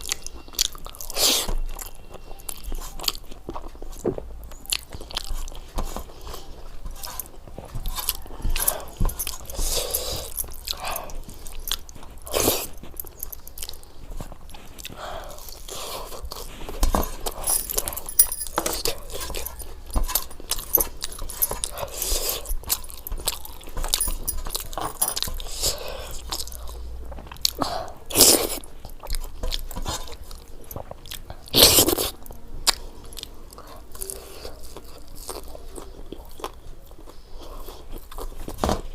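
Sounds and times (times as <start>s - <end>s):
person chewing crunchy food: 0.0s - 38.9s.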